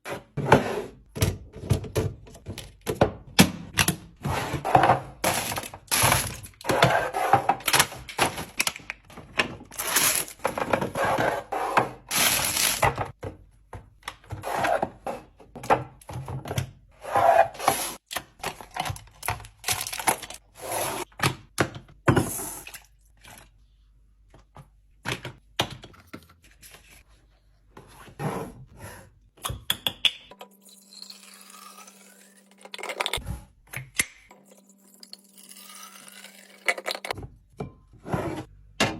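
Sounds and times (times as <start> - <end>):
food containers knocking and clunking: 0.4 - 9.7, 12.8 - 14.4.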